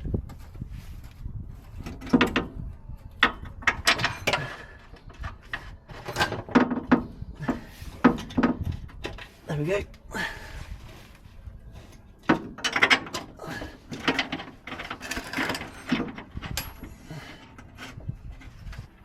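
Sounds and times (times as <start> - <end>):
tools clicking and knocking: 3.2 - 9.3, 12.2 - 18.0.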